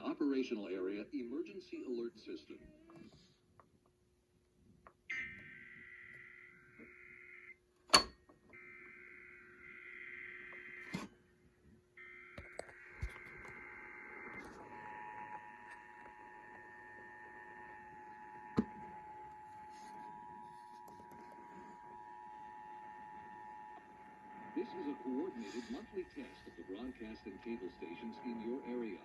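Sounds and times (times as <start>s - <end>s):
two-tone attention signal: 22.4s - 29.0s.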